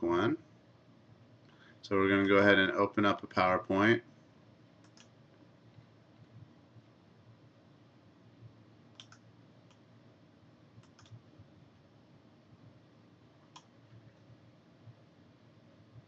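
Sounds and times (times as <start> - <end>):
computer mouse clicks: 4.8 - 5.2, 8.9 - 9.8, 10.8 - 11.2, 13.5 - 14.1.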